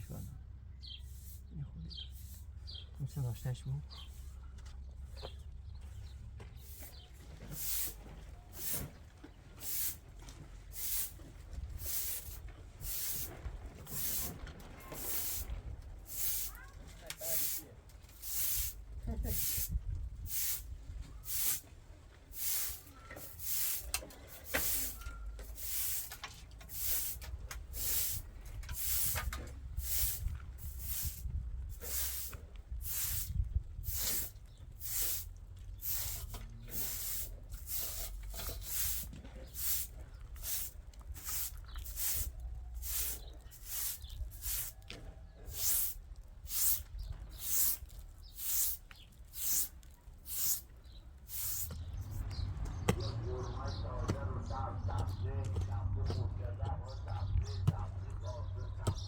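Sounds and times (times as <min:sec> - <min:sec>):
hand tool scraping rough surface: 0:11.8 - 0:16.5, 0:22.3 - 0:44.8.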